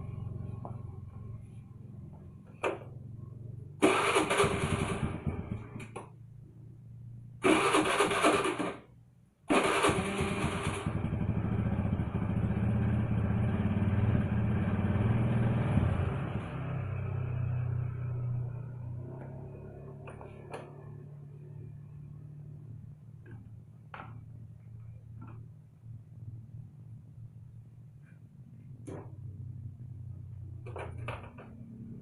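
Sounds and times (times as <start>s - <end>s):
motorcycle engine idling and revving: 0.0s - 6.1s, 7.4s - 8.8s, 9.5s - 24.2s, 28.8s - 32.0s.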